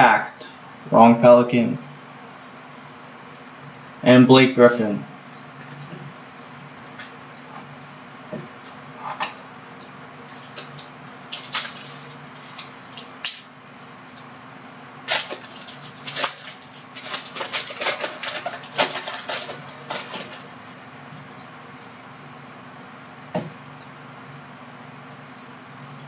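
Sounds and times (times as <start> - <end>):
trading cards and packaging clicking: 15.1 - 20.5.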